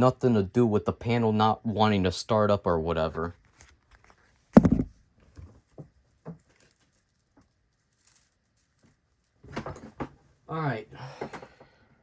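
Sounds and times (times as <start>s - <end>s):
loud thump: 4.6s - 4.9s.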